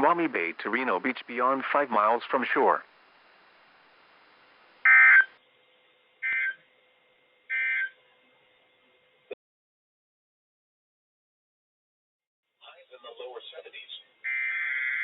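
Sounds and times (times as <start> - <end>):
faint radio hiss: 0.0 - 5.3, 12.5 - 14.2.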